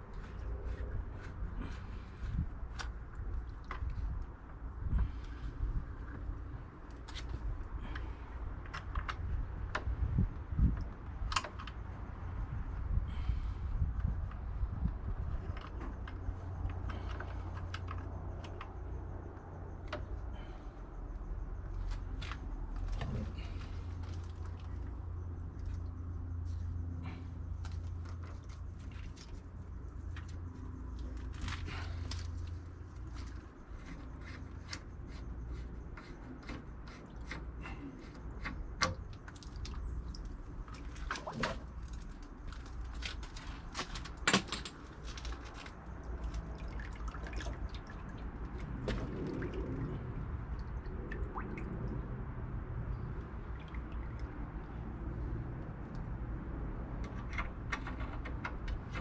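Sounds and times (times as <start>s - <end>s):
clicks and knocks of handiwork: 30.1s - 46.5s, 56.9s - 59.0s.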